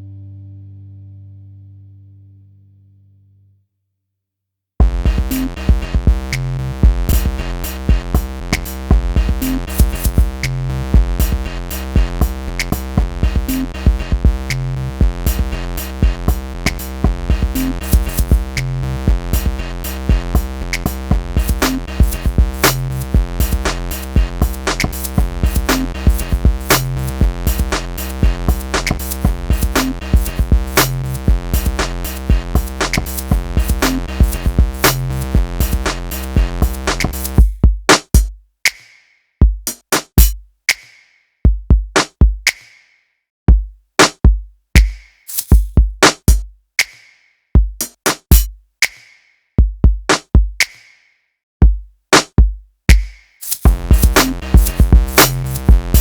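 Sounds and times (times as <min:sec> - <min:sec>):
electronic music with drum beat: 0:04.8 - 0:38.3, 0:39.7 - 0:40.8, 0:44.8 - 0:47.0, 0:47.8 - 0:49.1, 0:52.9 - 0:56.0.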